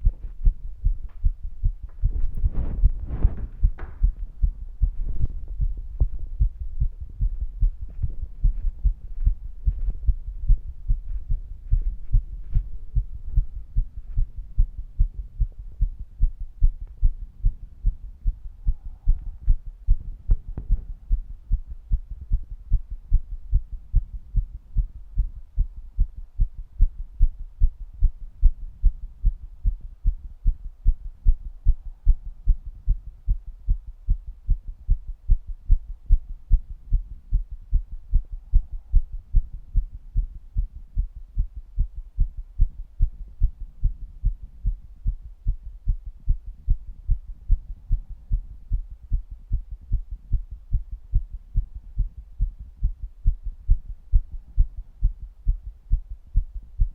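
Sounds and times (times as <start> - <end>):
faint scratchy rustles: 0.0 - 6.4, 7.7 - 14.4
heartbeat low thumps: 0.0 - 56.9.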